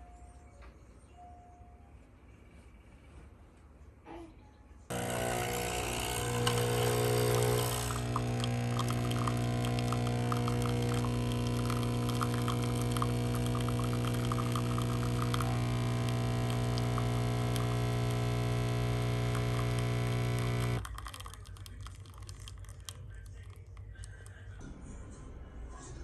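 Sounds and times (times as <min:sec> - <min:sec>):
coffee machine pump humming: 0:04.9 - 0:24.6.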